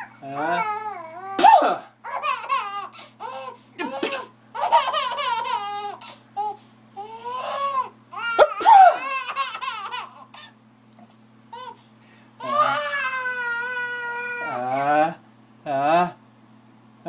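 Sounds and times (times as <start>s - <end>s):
sneezes: 1.4s - 1.9s, 3.8s - 4.3s, 8.4s - 9.0s
baby giggling and laughing: 2.1s - 10.5s.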